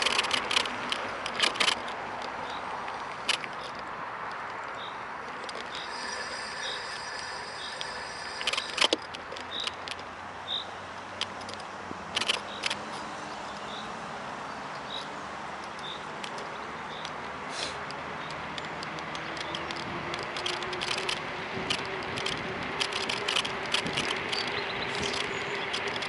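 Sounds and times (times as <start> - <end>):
sharp clicks and rattles: 0.0 - 10.1, 11.2 - 12.9, 18.2 - 26.0
scooter riding noise: 0.0 - 10.4, 17.8 - 26.0
phone holder squeaking: 5.6 - 9.8.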